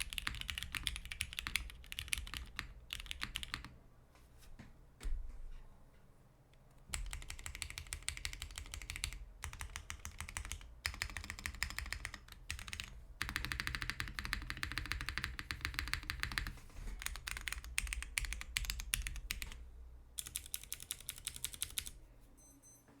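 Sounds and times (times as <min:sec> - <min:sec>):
mechanical keyboard typing: 0:00.0 - 0:03.7, 0:06.9 - 0:19.6, 0:20.2 - 0:22.0.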